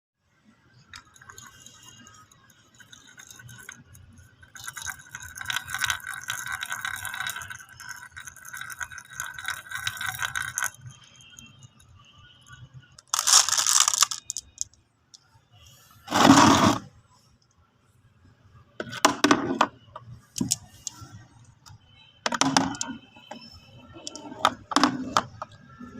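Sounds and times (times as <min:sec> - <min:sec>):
marbles clicking and rattling: 0:00.9 - 0:11.0, 0:13.0 - 0:14.8, 0:20.4 - 0:21.0, 0:22.3 - 0:23.0, 0:24.0 - 0:25.6.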